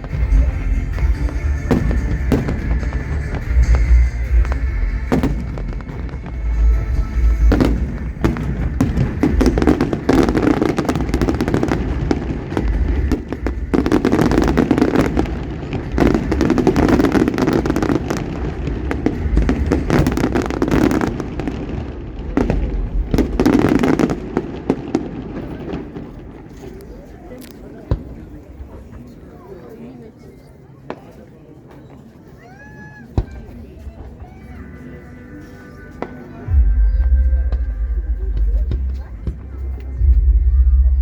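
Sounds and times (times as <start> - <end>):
deep firework booms: 0.0 - 26.6
fireworks bangs and crackling: 0.0 - 29.8, 30.8 - 34.6, 35.4 - 41.0.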